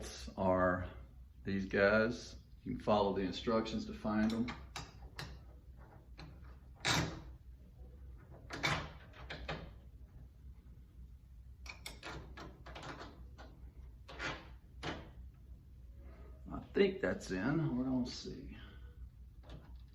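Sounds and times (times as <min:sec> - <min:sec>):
metal lock clicks and knocks: 0:04.2 - 0:07.4, 0:08.1 - 0:10.1, 0:11.6 - 0:15.3, 0:19.4 - 0:19.9.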